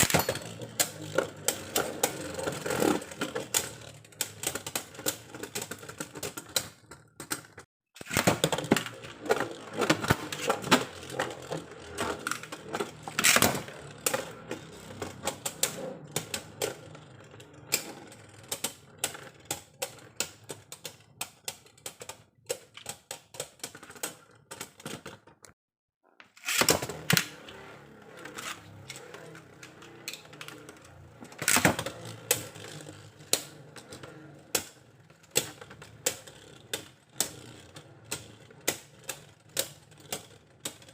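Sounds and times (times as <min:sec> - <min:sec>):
plastic spinning tops clattering: 0:00.0 - 0:20.9.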